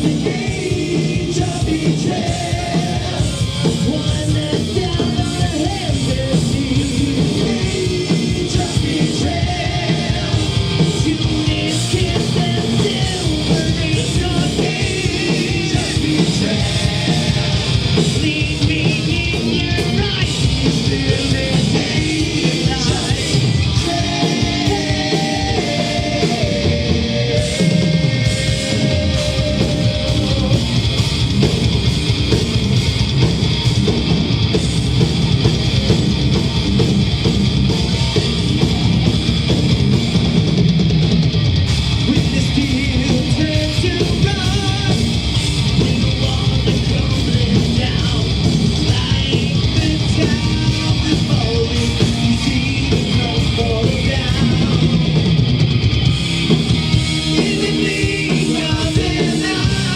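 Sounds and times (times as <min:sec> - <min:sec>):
person singing: 0:00.0 - 0:30.8, 0:57.3 - 0:59.9
bass guitar: 0:00.0 - 0:59.9
distorted electric guitars: 0:00.0 - 0:59.9
fast dense drumming: 0:00.0 - 0:59.9.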